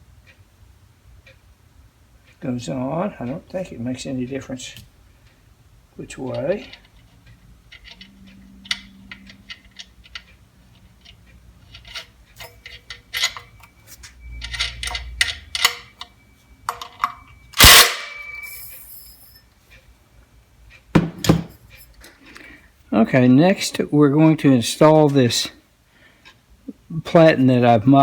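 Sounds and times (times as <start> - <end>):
metallic clicks of hand tools: 6.3 - 13.7
loud metal clank: 17.6 - 18.7.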